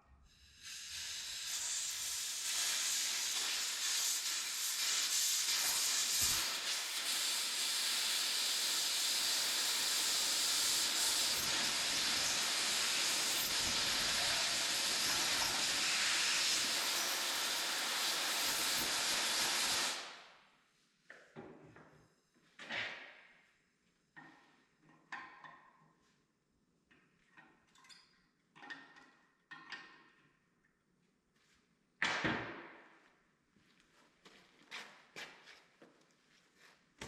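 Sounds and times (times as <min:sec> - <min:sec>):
welding arc hissing and crackling: 0:00.3 - 0:20.3.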